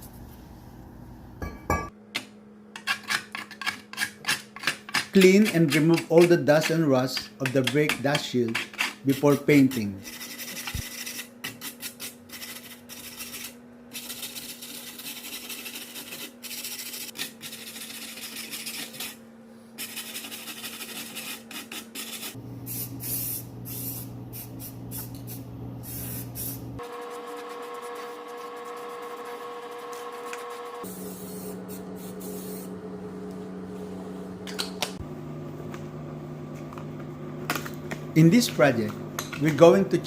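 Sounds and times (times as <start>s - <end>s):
steady hum and hiss: 5.1s - 26.8s, 29.9s - 35.0s.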